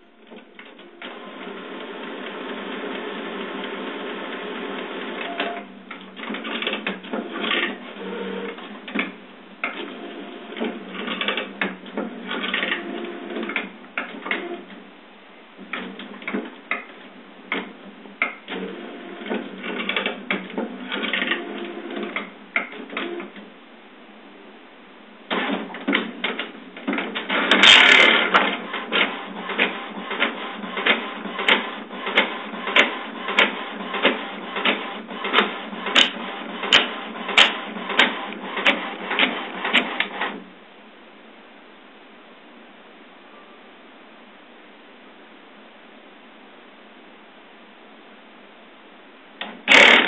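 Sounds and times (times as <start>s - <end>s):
printer mechanism grinding: 0.2s - 14.8s, 18.5s - 23.4s, 25.3s - 40.4s, 49.4s - 50.0s
printer clicks: 25.3s - 40.4s, 49.4s - 50.0s.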